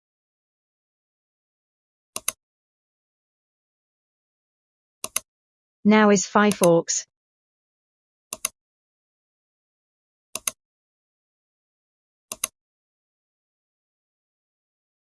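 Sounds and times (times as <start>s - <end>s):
computer mouse double clicks: 10.4s - 10.6s, 12.3s - 12.5s.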